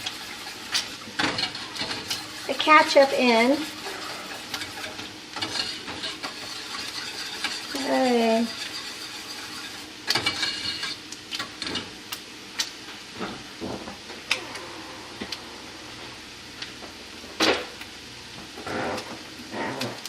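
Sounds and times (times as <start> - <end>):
kitchen utensils clicking and tapping: 0.0 - 3.6, 4.3 - 11.8.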